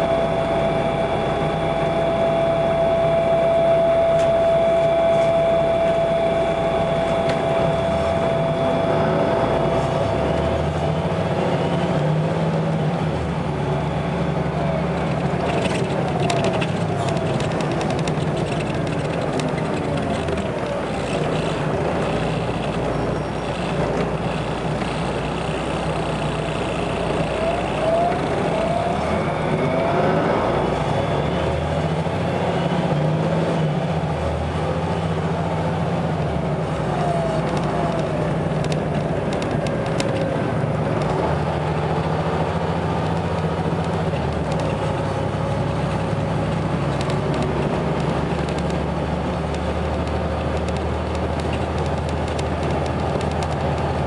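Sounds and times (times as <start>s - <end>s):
short rising whines: 0.0s - 18.8s, 19.5s - 34.4s
bus engine running: 0.0s - 54.0s.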